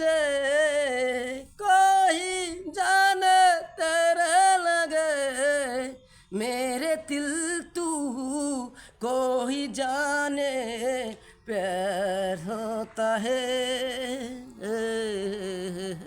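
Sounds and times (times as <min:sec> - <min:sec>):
person singing: 0:00.0 - 0:16.0
short breaths: 0:06.0 - 0:06.4, 0:08.7 - 0:09.0, 0:11.2 - 0:11.5.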